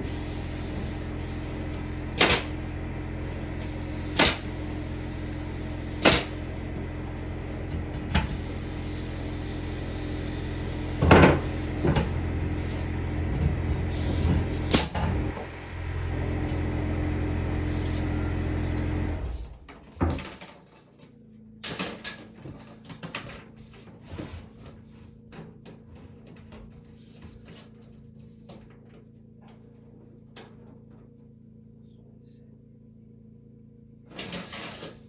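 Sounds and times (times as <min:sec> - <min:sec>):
motor running: 0:00.0 - 0:19.7.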